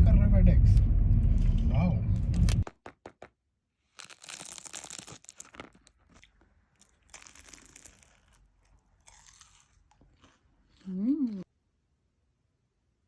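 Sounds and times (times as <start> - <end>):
crunchy food chewing: 3.9 - 11.5.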